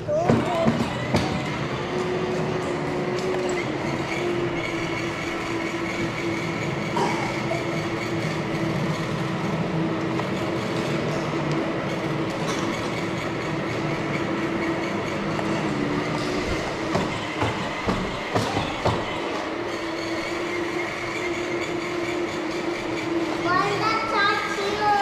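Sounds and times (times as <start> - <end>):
electric motor whine: 0.8 - 24.0
sharp knocks: 16.8 - 19.1.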